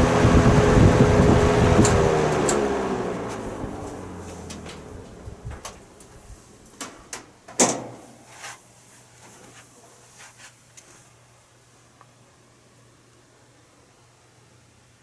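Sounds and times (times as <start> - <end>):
box fan coasting down: 0.0 - 8.2.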